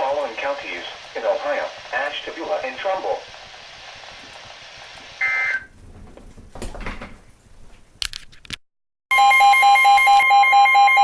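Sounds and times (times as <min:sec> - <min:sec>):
emergency alert tone with rapid beeping: 0:09.1 - 0:11.0.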